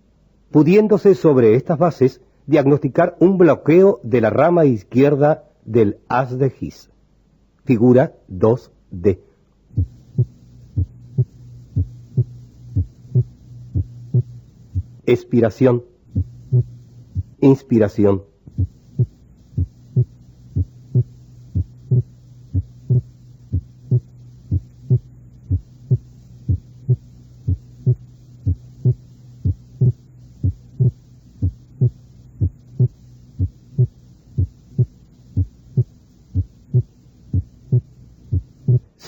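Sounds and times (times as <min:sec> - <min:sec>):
steady low hum: 0:00.0 - 0:39.0
heartbeat sounds: 0:09.7 - 0:15.0, 0:16.1 - 0:17.4, 0:18.5 - 0:39.0.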